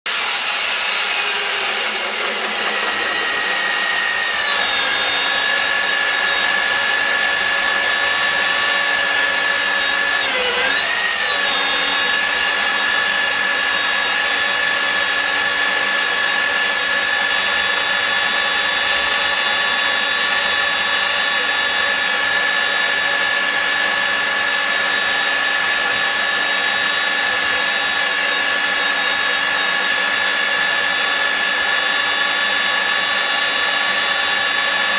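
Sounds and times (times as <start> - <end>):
drill motor whining: 0.1 - 34.9.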